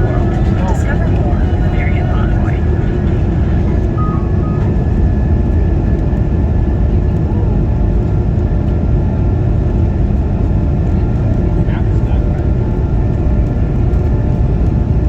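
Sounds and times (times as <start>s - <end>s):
faint steady whine: 0.0s - 6.4s
aircraft engines rumbling: 0.0s - 15.0s.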